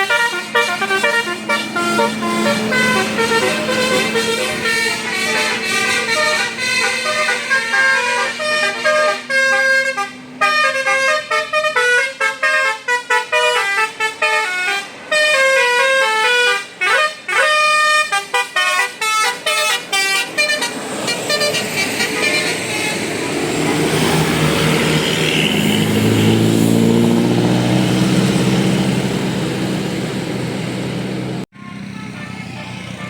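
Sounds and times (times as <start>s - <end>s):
musical air horn melody: 0.0s - 23.3s, 31.5s - 33.0s.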